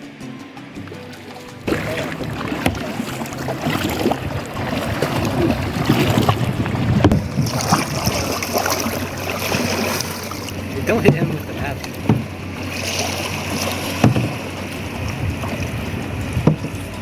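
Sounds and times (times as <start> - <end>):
paddle splashing in water: 0.8 - 17.0
short knocks: 6.0 - 8.2, 10.8 - 12.4, 13.5 - 14.4, 16.3 - 16.8.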